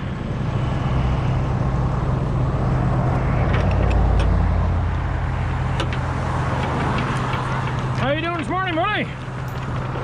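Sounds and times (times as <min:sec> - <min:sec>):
diesel engine running: 0:00.0 - 0:10.0.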